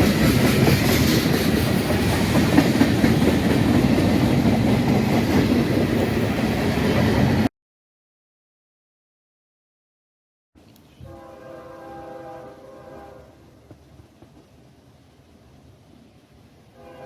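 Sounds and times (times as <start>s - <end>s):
train wheels clicking over rail joints: 0.0s - 7.3s.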